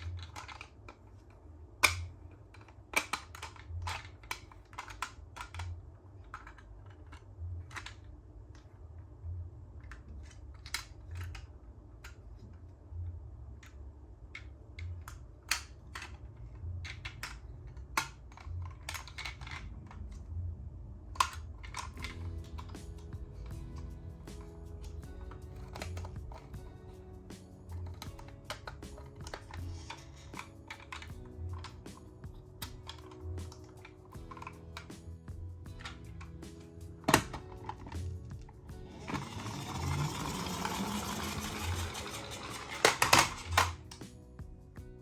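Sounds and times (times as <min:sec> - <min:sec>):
plastic toy cars clattering: 0:00.0 - 0:08.8, 0:09.8 - 0:12.7, 0:13.6 - 0:20.3, 0:21.2 - 0:35.1, 0:35.8 - 0:44.1.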